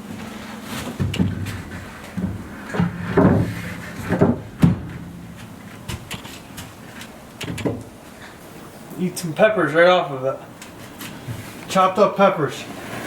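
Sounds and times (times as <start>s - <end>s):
knocks and clunks of handling: 0.7s - 8.4s.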